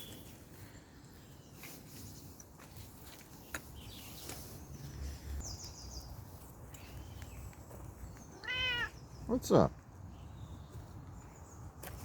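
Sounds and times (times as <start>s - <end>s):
distant bird calls: 3.4s - 9.4s.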